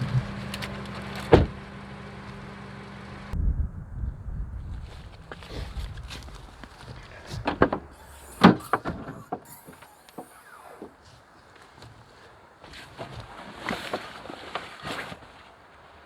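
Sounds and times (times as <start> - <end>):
wind rumbling on microphone: 3.3 - 10.8
camping gear knocking and clattering: 4.7 - 15.7.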